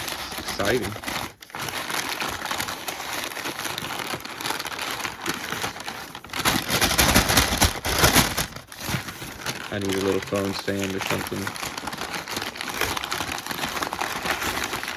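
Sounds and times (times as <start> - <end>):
packaging crinkling: 0.0 - 14.9.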